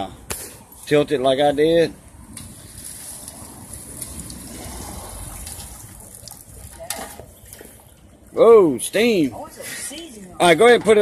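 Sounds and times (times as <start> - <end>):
water pouring and splashing: 2.2 - 9.9.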